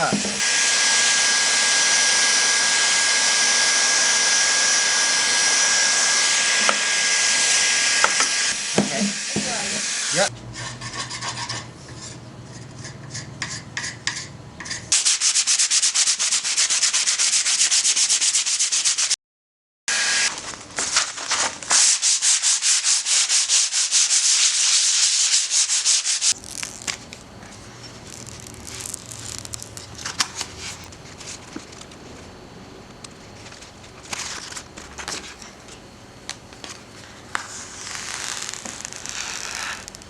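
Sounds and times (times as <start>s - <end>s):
sanding wood with scratchy strokes: 5.0s - 12.2s, 14.9s - 19.2s, 21.7s - 26.4s.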